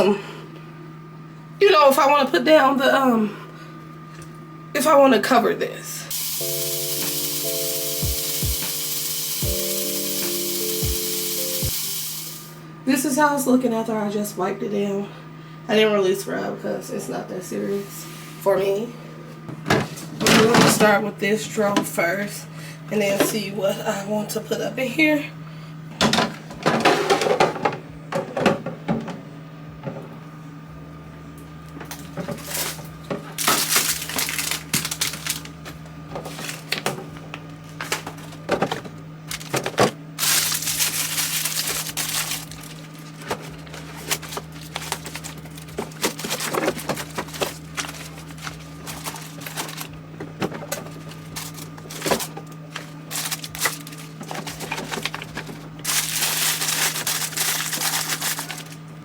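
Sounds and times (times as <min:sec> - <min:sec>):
low hum: 0:27.8 - 0:59.0
rustling: 0:40.2 - 0:49.9.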